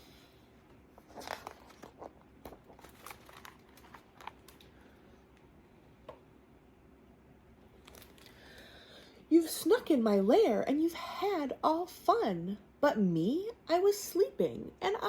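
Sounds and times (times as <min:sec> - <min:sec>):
faint paper crinkling: 0:00.9 - 0:05.5, 0:07.7 - 0:08.7
book pages turning: 0:01.0 - 0:04.9, 0:07.8 - 0:08.3.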